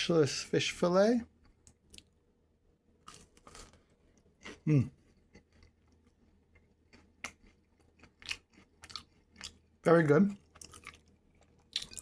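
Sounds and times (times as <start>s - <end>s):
person chewing: 1.4s - 2.2s, 2.9s - 12.0s
person humming: 4.6s - 5.0s.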